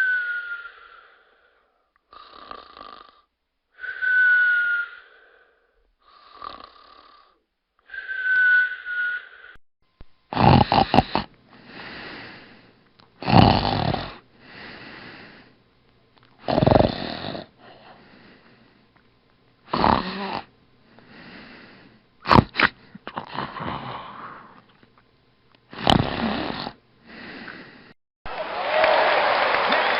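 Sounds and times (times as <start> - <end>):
quiet breath out: 0.0 - 1.9, 3.8 - 6.5, 10.9 - 12.8, 14.4 - 15.6, 17.5 - 19.0, 20.8 - 22.1, 22.7 - 24.7, 27.0 - 28.0
loud snoring: 2.1 - 3.3, 6.0 - 7.4, 10.3 - 12.5, 13.2 - 15.4, 16.4 - 17.6, 19.7 - 20.5, 22.3 - 24.6, 25.7 - 27.6.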